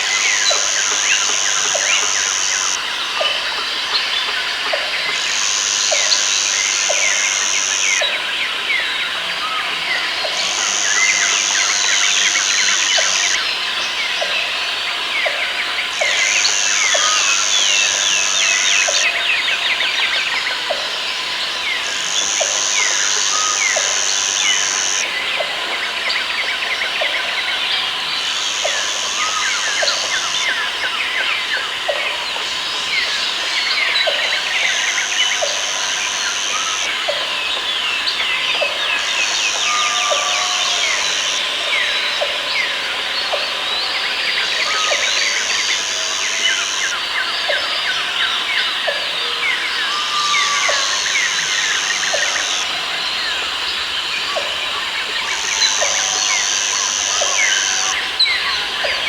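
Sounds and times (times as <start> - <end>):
high steady buzz: 0.0 - 3.0, 5.0 - 8.4, 9.8 - 14.1, 15.8 - 25.1, 27.8 - 31.0, 31.6 - 37.1, 55.2 - 58.3.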